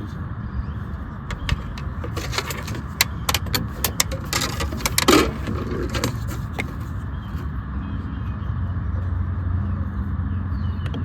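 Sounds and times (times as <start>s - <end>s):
clicks and metallic rattles: 1.3s - 7.0s
scraping rustle: 1.3s - 7.5s.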